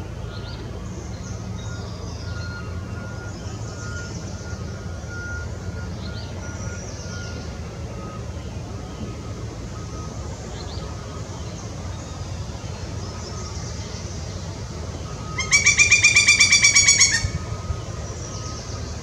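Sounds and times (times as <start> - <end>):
woodpecker calling: 12.9 - 19.0.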